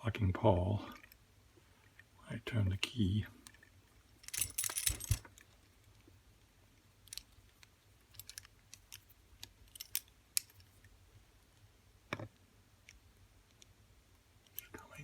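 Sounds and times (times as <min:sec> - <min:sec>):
handcuff lock metallic clicks: 0:04.2 - 0:05.3, 0:08.1 - 0:10.7.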